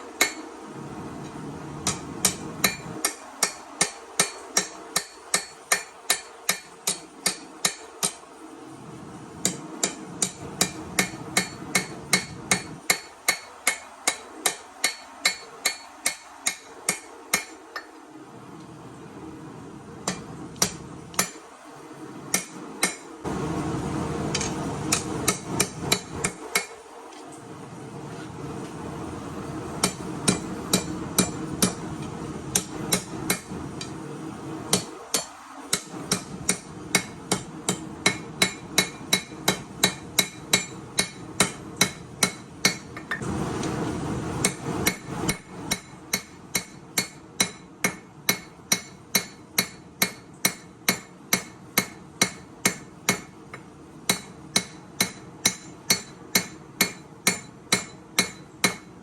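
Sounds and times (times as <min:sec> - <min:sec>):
hammer striking steel on anvil: 0:00.2 - 0:00.5, 0:01.8 - 0:08.2, 0:09.4 - 0:18.0, 0:20.0 - 0:21.4, 0:22.3 - 0:23.1, 0:24.3 - 0:26.8, 0:29.8 - 0:31.8, 0:32.5 - 0:34.0, 0:34.7 - 0:43.2, 0:44.4 - 0:59.0.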